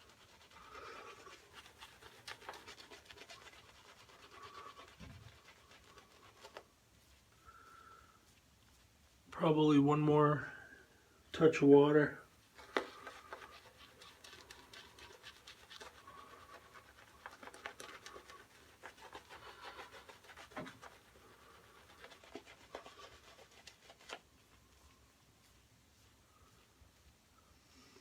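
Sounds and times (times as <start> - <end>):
shaving brush swishing lather: 0.0 - 7.3, 12.4 - 26.2.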